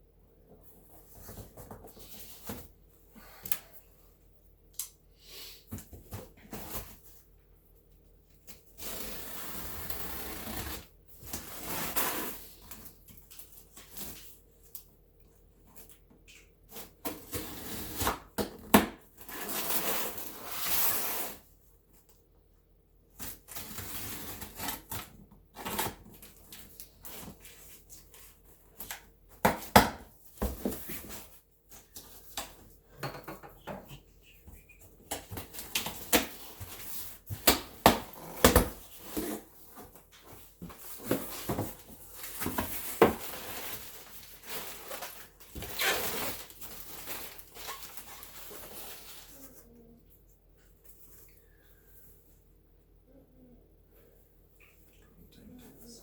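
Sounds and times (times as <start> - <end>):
rustling packaging: 35.1 - 49.6.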